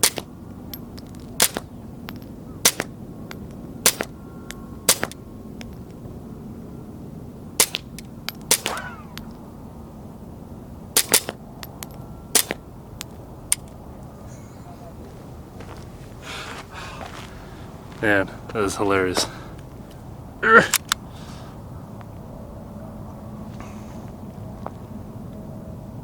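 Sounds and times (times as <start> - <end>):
suppressed pistol shots: 0.0 - 0.3, 1.3 - 3.0, 3.8 - 4.2, 4.8 - 5.2, 7.6 - 9.3, 11.0 - 11.4, 12.3 - 12.6
pistol action clicking: 0.0 - 5.9, 7.6 - 9.4, 11.0 - 13.8.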